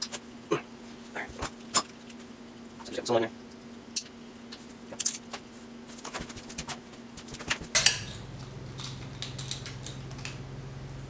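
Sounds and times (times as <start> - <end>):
metal parts clinking: 7.8 - 8.2.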